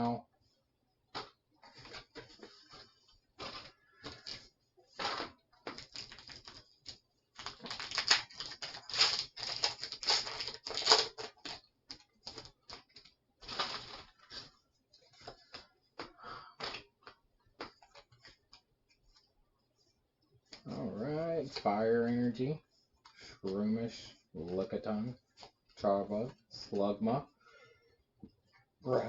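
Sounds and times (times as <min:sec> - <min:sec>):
foil wrapper crinkling and tearing: 0:03.4 - 0:14.4.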